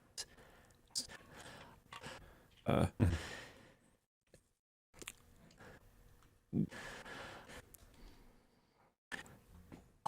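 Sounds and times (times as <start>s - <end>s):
person sighing: 2.7s - 3.5s
small mouth noises: 5.0s - 5.6s
faint breaths: 6.6s - 9.4s.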